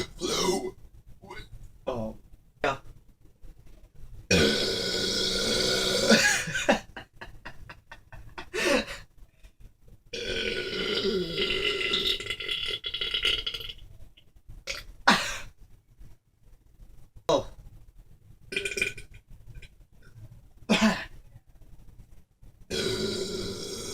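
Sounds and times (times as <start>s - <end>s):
man belching: 0.0s - 1.4s, 4.3s - 6.4s, 10.2s - 13.8s, 18.5s - 19.0s, 22.7s - 23.9s.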